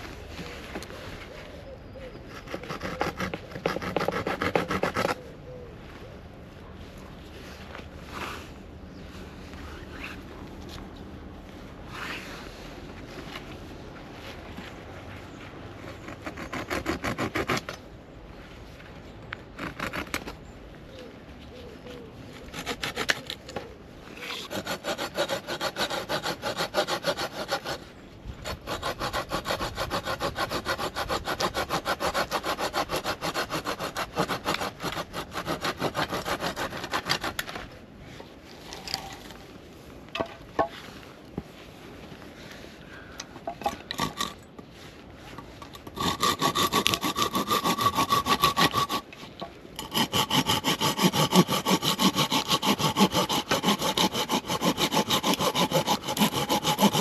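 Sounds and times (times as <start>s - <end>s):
hand saw cutting wood: 2.3s - 5.2s, 16.0s - 17.8s, 19.6s - 20.4s, 22.5s - 23.6s, 24.2s - 37.7s, 43.9s - 44.4s, 45.8s - 57.0s.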